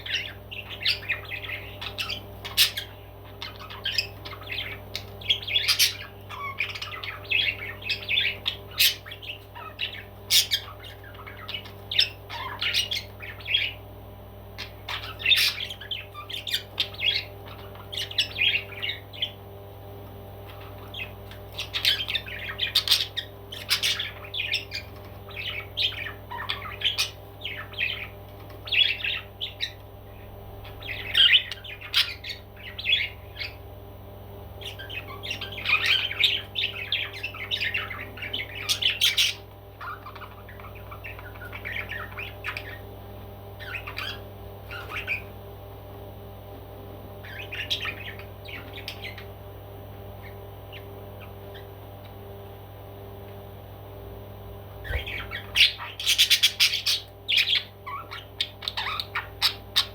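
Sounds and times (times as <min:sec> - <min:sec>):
parrot squawking and chattering: 0:00.0 - 0:13.8, 0:14.6 - 0:19.4, 0:20.4 - 0:29.8, 0:30.6 - 0:33.6, 0:34.6 - 0:42.9, 0:54.8 - 0:59.9
steady low hum: 0:00.0 - 0:59.9.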